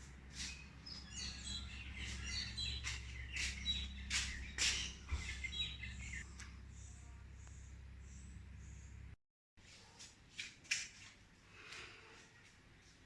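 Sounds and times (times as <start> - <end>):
small birds chirping: 0.0 - 9.2
low steady hum: 1.2 - 9.2.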